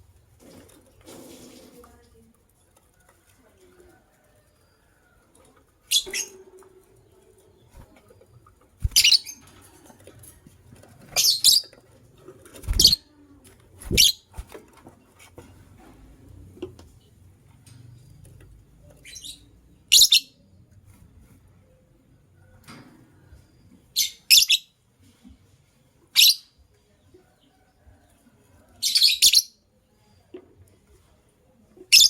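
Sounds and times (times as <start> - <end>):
lovebirds chirping: 7.5 - 9.5, 11.1 - 11.7, 13.8 - 14.4.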